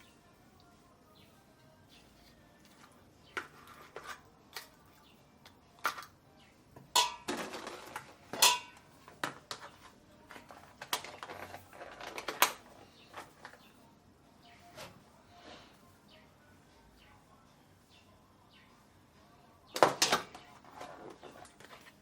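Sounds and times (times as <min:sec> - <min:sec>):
dishes and pots clattering: 0:06.8 - 0:09.6.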